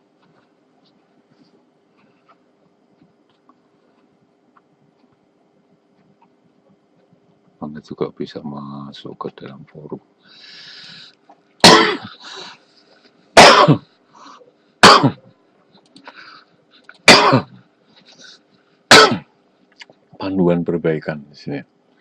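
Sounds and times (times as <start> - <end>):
faint steady hum: 0.0 - 22.0
person coughing hard: 11.6 - 12.5, 13.4 - 13.9, 14.8 - 15.2, 17.0 - 17.6, 18.9 - 19.3.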